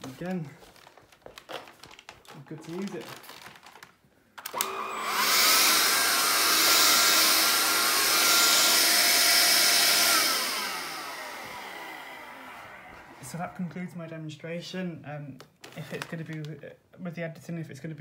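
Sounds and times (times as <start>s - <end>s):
vacuum cleaner switch: 4.4s - 13.2s
vacuum cleaner motor whining: 4.4s - 13.5s.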